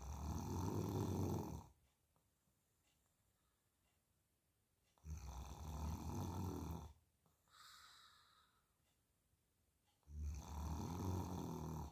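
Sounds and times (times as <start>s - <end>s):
low rasping snore-like sound: 0.0s - 1.8s, 5.0s - 7.0s, 10.0s - 11.9s.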